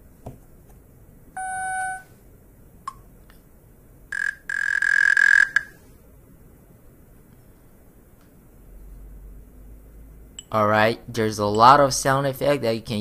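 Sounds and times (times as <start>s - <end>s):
electronic beep: 1.4s - 2.0s
buzzing tone: 1.4s - 2.1s, 4.1s - 5.8s
brief tone: 1.4s - 2.2s.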